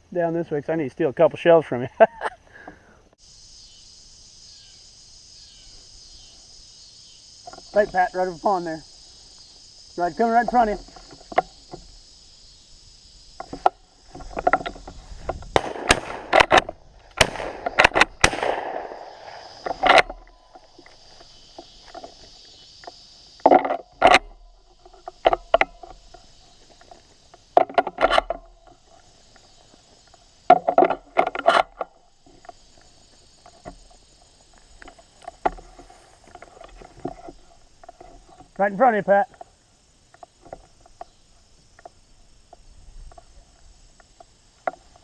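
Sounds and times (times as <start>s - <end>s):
insects buzzing: 0.0s - 45.0s
shotgun shots: 15.5s - 16.6s, 17.2s - 20.0s.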